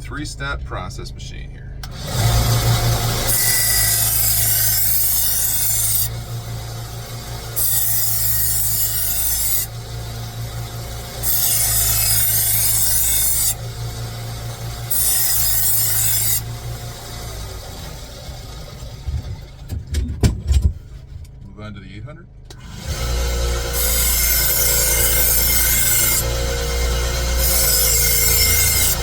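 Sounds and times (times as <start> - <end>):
sharpener motor humming: 1.8 - 18.6, 22.6 - 29.0
knife grinding on abrasive: 3.1 - 6.1, 7.5 - 9.7, 11.2 - 13.6, 14.9 - 16.5, 23.7 - 26.4, 27.3 - 29.0.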